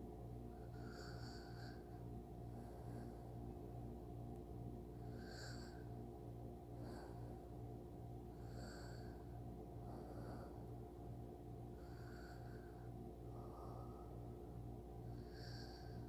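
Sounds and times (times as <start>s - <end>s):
steady low hum: 0.0s - 16.0s
person snoring softly: 0.5s - 3.4s, 4.9s - 6.0s, 6.7s - 7.6s, 8.3s - 10.8s, 11.7s - 16.0s.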